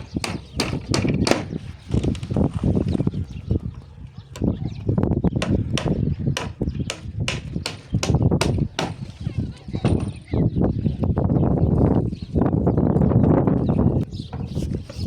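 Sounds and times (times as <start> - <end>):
sharp knocks: 0.1 - 1.5, 5.4 - 9.1.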